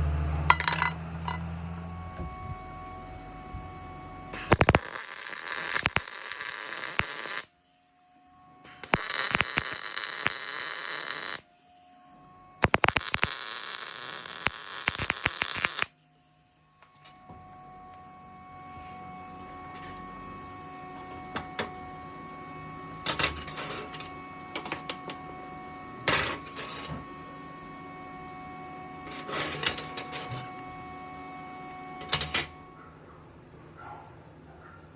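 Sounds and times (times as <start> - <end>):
arc welding crackling hiss: 4.3 - 7.5, 8.7 - 11.4, 12.6 - 16.0.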